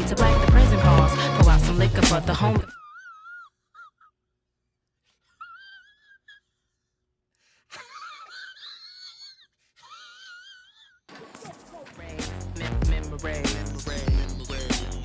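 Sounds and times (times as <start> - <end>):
loud music: 0.0 - 2.6, 11.8 - 15.0.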